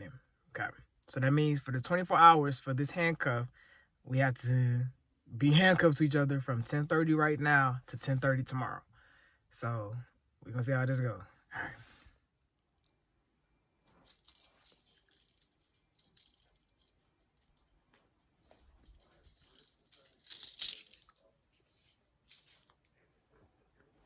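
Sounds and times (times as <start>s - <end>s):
rustling: 13.8s - 24.0s.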